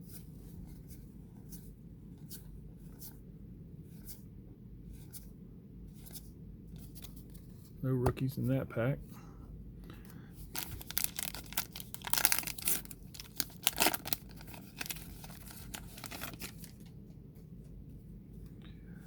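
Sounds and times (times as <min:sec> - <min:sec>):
wrapper tearing and crinkling: 0:10.5 - 0:16.9.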